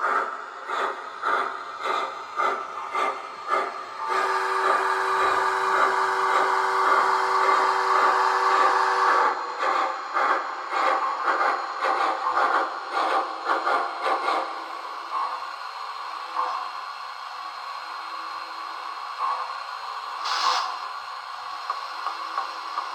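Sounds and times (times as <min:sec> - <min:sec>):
steam locomotive chuffing: 0:00.0 - 0:16.8, 0:18.9 - 0:22.9
chime steam whistle: 0:04.1 - 0:09.2.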